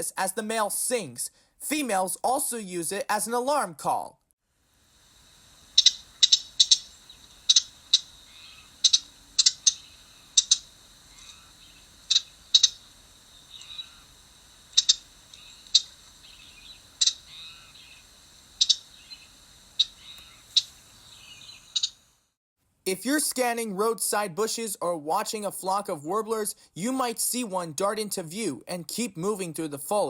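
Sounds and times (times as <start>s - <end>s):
bird giving sharp call notes: 5.8s - 12.8s, 14.8s - 18.0s.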